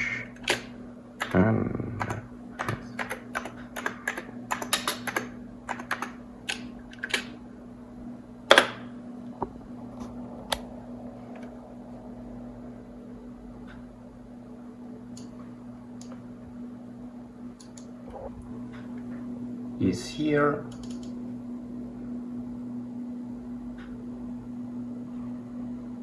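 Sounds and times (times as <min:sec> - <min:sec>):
typing on computer keyboard: 0:00.0 - 0:07.4, 0:08.5 - 0:08.9, 0:20.7 - 0:21.2
low electrical hum: 0:00.0 - 0:26.0.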